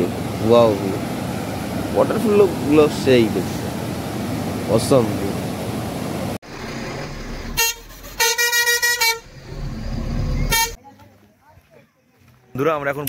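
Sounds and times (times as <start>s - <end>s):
low engine rumble: 0.0s - 10.8s
vehicle horn honking: 7.5s - 9.6s, 10.3s - 10.8s.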